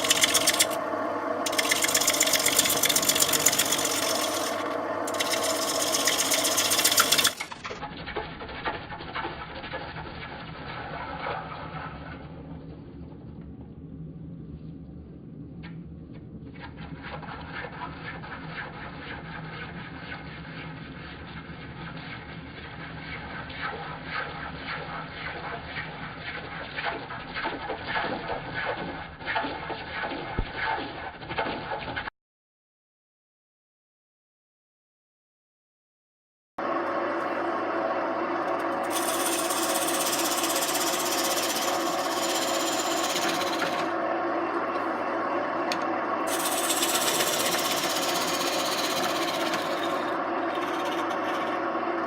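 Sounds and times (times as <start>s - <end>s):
wood lathe tool scraping: 0.0s - 0.8s, 1.4s - 7.7s, 38.5s - 43.9s, 45.7s - 51.7s.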